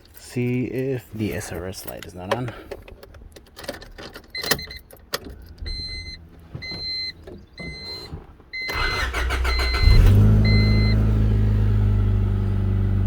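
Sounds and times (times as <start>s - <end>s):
dashboard warning chime beeping: 4.4s - 4.9s, 5.6s - 11.2s
starter cranking car engine: 8.7s - 12.1s
car engine idling: 8.7s - 13.0s.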